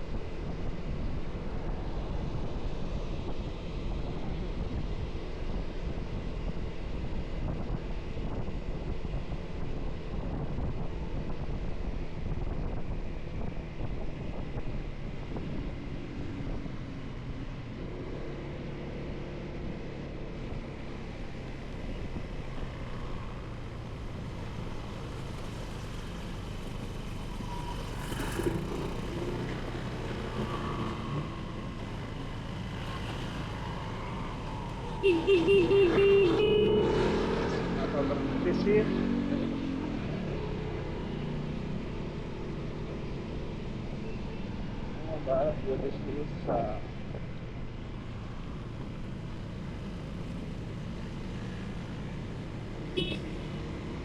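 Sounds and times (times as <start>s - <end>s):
motorcycle engine running: 48.0s - 54.0s.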